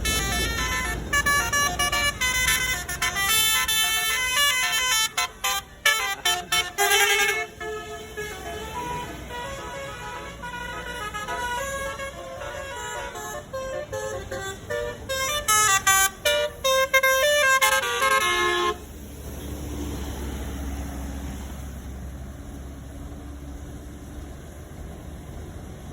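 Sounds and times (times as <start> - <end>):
musical bus horn melody: 0.0 - 18.9
bus engine rumble: 0.0 - 25.9.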